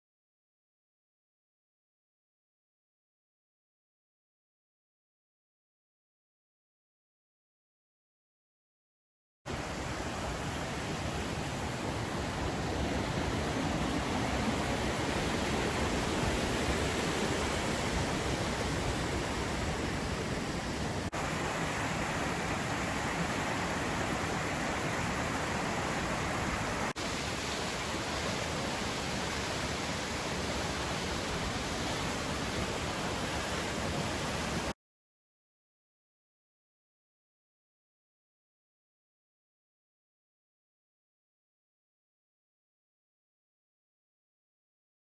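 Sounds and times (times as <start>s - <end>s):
waterfall rushing: 9.5s - 34.8s.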